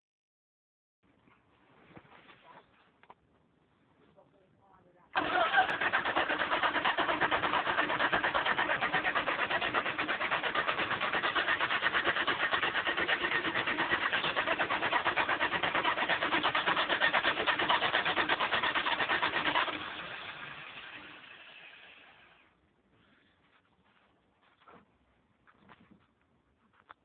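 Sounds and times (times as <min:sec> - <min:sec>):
car engine with ticking clatter: 0:05.2 - 0:21.6.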